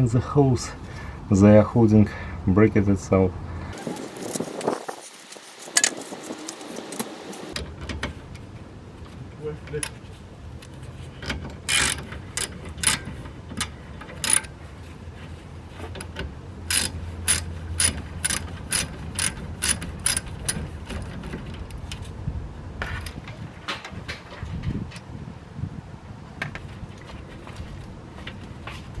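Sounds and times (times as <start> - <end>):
ratchet wrench clicking: 3.8 - 7.6.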